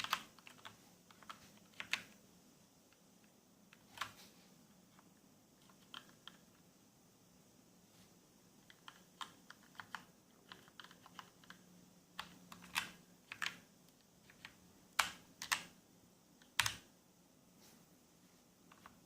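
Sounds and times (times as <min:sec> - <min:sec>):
mechanical keyboard typing: 0:00.0 - 0:02.2, 0:03.7 - 0:04.2, 0:05.6 - 0:06.6, 0:08.6 - 0:11.6, 0:12.2 - 0:15.8, 0:16.4 - 0:16.9.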